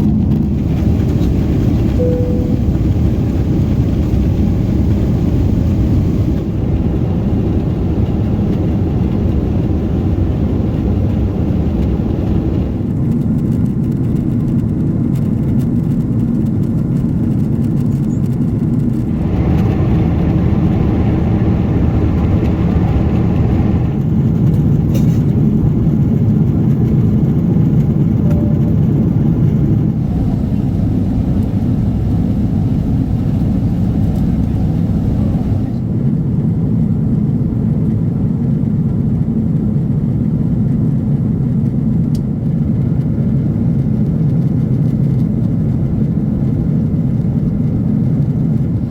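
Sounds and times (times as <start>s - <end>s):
airplane cabin rumble: 0.0s - 48.9s.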